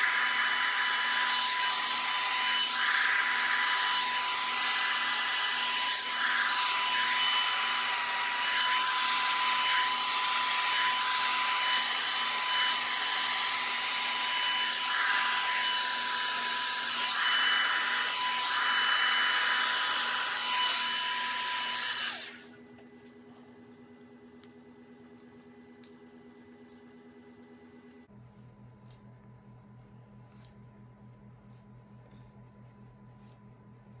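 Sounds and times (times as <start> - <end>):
hot air brush dryer whining: 0.0 - 22.7.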